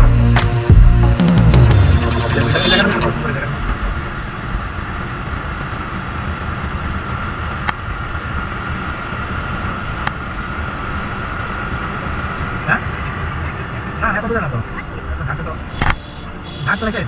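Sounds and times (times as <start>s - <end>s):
moving vehicle running noise: 0.0s - 17.0s.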